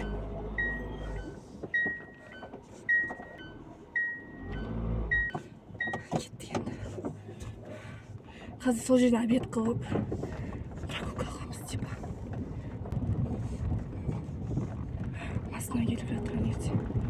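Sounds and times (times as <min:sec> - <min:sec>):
car warning chime dinging: 0:00.0 - 0:06.6
car engine idling: 0:00.0 - 0:12.9.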